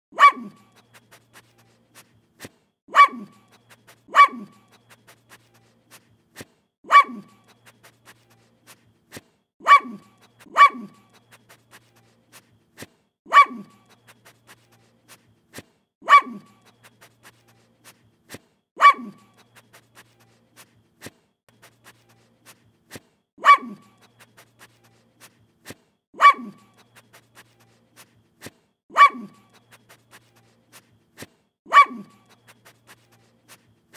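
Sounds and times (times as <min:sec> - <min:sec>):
dog barking: 0:00.1 - 0:01.0, 0:02.9 - 0:04.9, 0:06.8 - 0:07.7, 0:09.6 - 0:11.3, 0:13.3 - 0:14.1, 0:16.0 - 0:16.8, 0:18.8 - 0:19.5, 0:23.4 - 0:24.2, 0:26.2 - 0:26.9, 0:28.9 - 0:29.7, 0:31.7 - 0:32.4
dog sniffing: 0:00.2 - 0:33.9.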